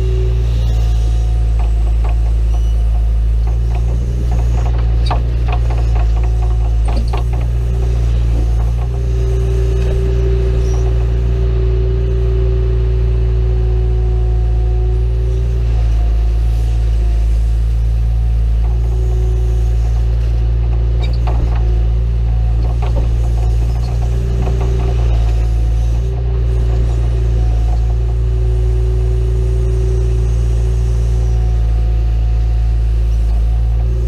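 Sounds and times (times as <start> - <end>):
whining tone: 0.0 - 16.0
backhoe diesel engine running: 0.0 - 34.0.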